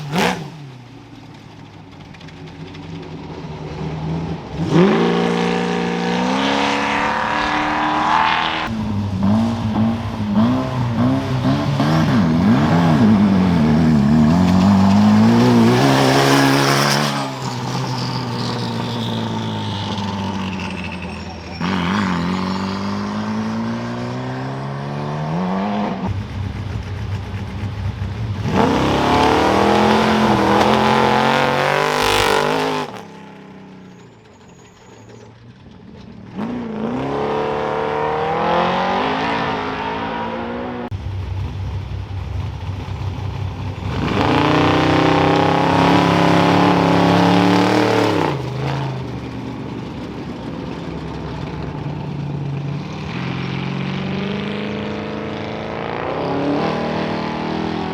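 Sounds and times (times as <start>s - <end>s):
race vehicle engines revving: 0.0s - 57.9s
vehicles passing by: 0.0s - 57.9s.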